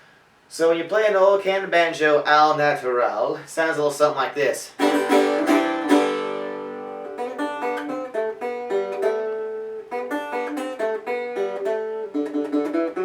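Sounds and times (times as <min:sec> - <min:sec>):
banjo chord ringing: 0:04.8 - 0:13.0
banjo picked notes: 0:04.8 - 0:13.0.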